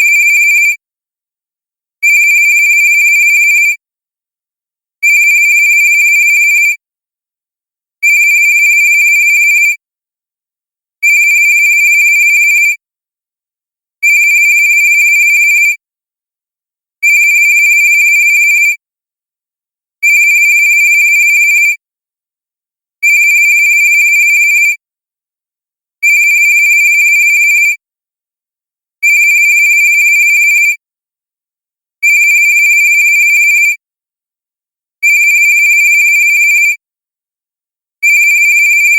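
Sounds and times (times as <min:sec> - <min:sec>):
cell phone ringtone: 0:38.2 - 0:38.9.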